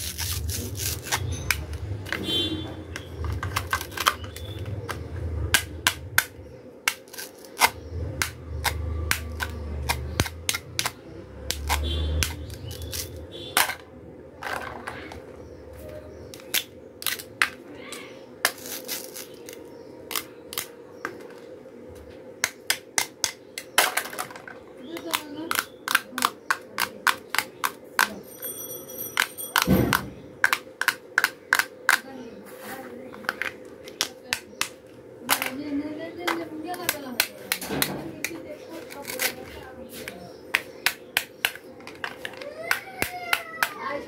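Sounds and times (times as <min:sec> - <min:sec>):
plastic toy pieces clicking: 0:03.2 - 0:13.8, 0:18.4 - 0:20.7, 0:22.4 - 0:28.2, 0:30.4 - 0:32.1, 0:35.3 - 0:35.6, 0:40.5 - 0:43.8.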